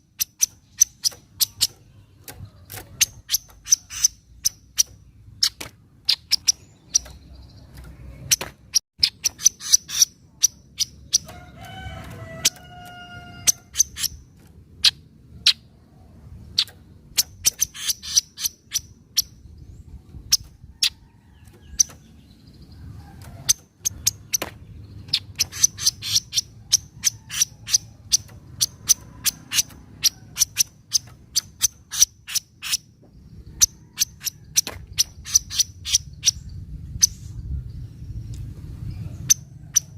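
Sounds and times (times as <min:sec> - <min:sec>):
bird chattering sharp notes: 0:00.0 - 0:11.4, 0:12.4 - 0:15.7, 0:16.5 - 0:19.5, 0:23.4 - 0:32.9, 0:33.5 - 0:37.2.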